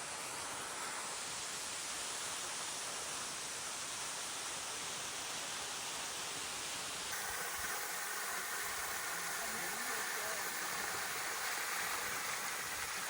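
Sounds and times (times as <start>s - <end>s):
waterfall roaring: 7.1s - 13.0s.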